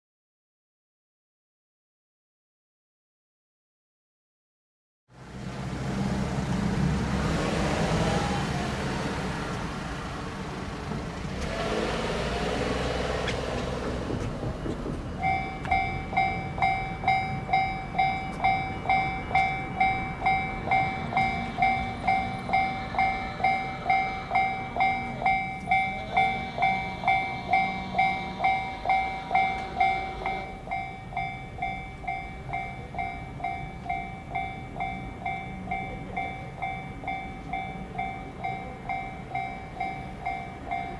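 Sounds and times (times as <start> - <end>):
passing vehicle noise: 5.1 - 40.9
level crossing warning bell: 15.2 - 40.9.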